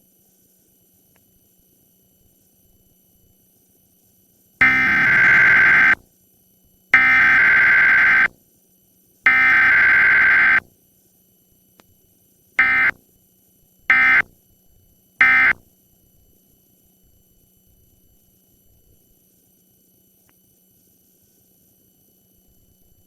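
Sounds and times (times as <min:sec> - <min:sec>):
screeching digital data bursts: 0:04.6 - 0:06.0, 0:07.0 - 0:08.3, 0:09.3 - 0:10.7, 0:12.6 - 0:13.0, 0:13.9 - 0:14.2, 0:15.2 - 0:15.6.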